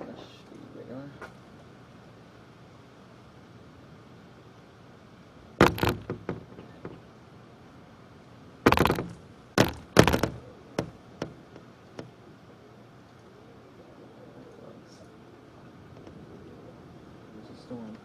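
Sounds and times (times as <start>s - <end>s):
loud knocks and thumps: 5.6s - 7.1s, 8.6s - 12.1s.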